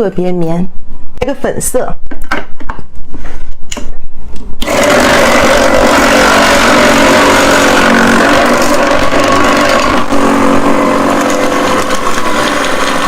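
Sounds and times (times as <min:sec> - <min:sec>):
ice shaving machine motor whirring: 0:04.6 - 0:13.0.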